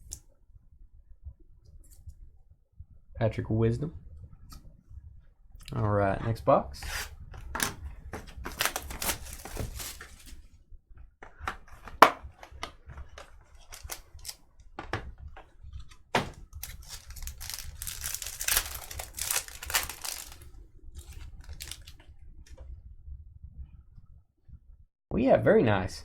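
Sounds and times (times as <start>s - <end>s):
plastic wrapper crinkling and tearing: 7.6s - 10.4s, 11.8s - 14.4s, 16.2s - 22.0s
box clicks and taps: 11.4s - 12.7s.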